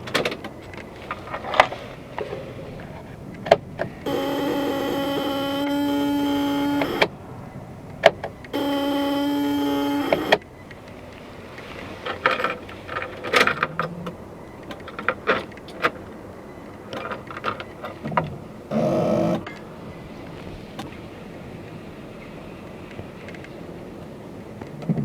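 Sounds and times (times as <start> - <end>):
starter motor whine: 3.8 - 10.9, 18.7 - 19.5.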